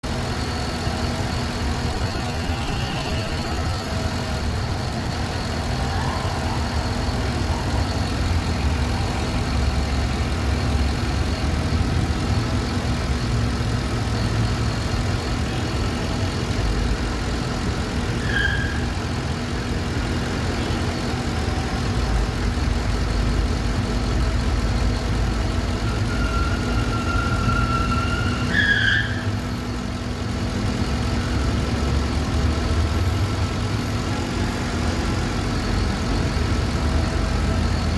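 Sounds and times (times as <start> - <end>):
car engine idling: 0.0 - 37.9
high squeaks: 0.4 - 16.4, 18.0 - 19.2, 25.6 - 29.8.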